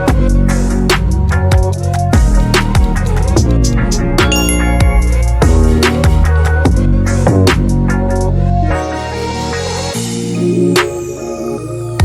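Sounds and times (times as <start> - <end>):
electronic music with drum beat: 0.0 - 12.0.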